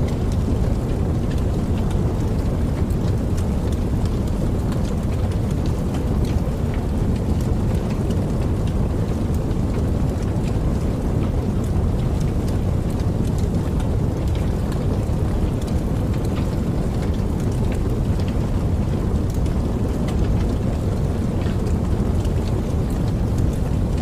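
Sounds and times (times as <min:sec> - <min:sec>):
campfire crackling and popping: 0:00.0 - 0:24.0.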